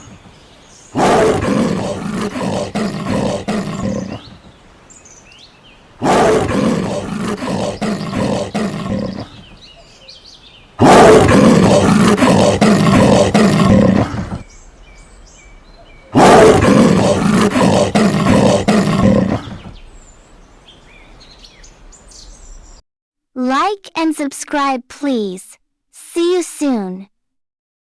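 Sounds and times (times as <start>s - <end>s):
large animal roaring: 1.0s - 4.4s, 6.0s - 9.5s, 10.8s - 14.4s, 16.2s - 19.8s.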